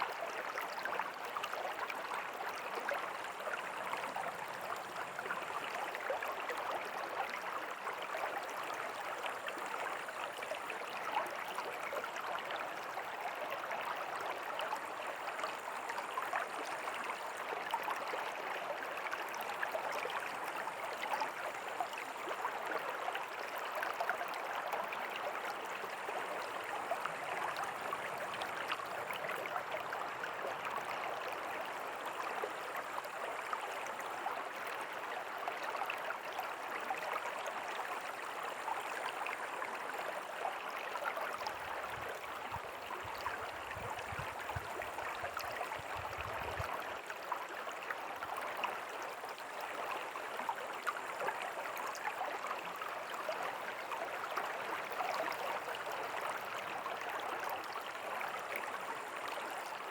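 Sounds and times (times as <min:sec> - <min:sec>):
river flowing: 0:00.0 - 0:59.9.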